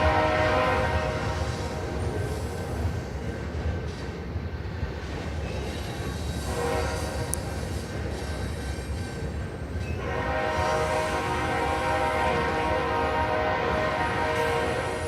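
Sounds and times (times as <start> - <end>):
locomotive horn blowing: 0.0 - 1.7, 6.5 - 7.4, 10.0 - 15.0.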